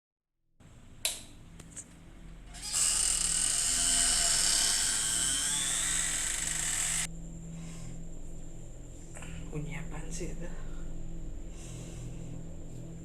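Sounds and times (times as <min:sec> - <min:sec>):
loud high whirring hiss: 0:02.4 - 0:13.0.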